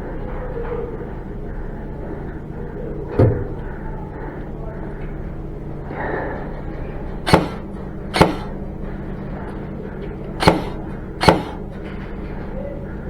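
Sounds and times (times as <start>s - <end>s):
steady low hum: 0.0s - 13.0s
airsoft gun shots: 7.3s - 8.6s, 10.4s - 11.6s.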